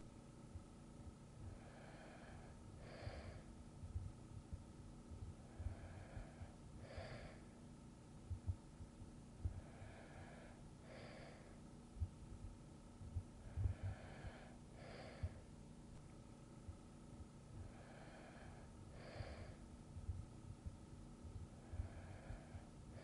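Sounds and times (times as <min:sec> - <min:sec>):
person breathing in sleep: 0:01.4 - 0:03.5, 0:05.4 - 0:07.6, 0:09.4 - 0:11.6, 0:13.4 - 0:15.5, 0:17.5 - 0:19.6, 0:21.6 - 0:23.0
faint low thumps: 0:03.8 - 0:06.5, 0:08.2 - 0:09.7, 0:12.0 - 0:14.5, 0:19.3 - 0:22.6.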